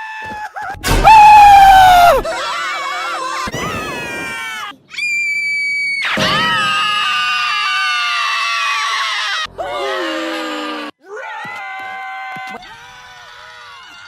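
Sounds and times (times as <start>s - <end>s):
cartoon characters screaming: 0.0s - 14.0s
high shrill scream: 1.0s - 10.8s.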